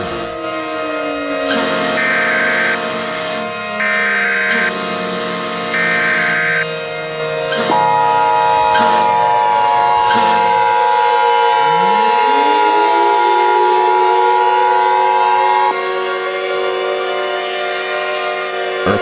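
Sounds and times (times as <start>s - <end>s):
siren winding up: 0.0s - 2.9s, 7.5s - 15.8s.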